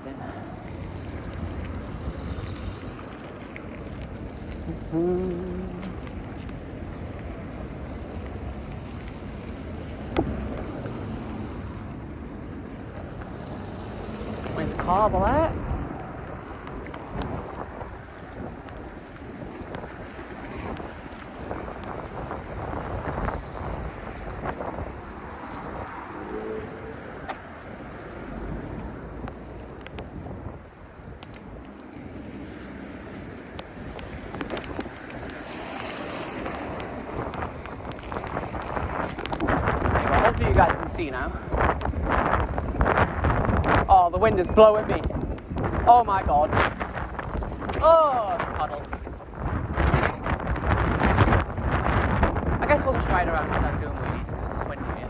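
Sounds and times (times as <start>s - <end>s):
wind buffeting microphone: 0.0s - 55.0s
tyres hissing on wet road: 30.9s - 40.0s.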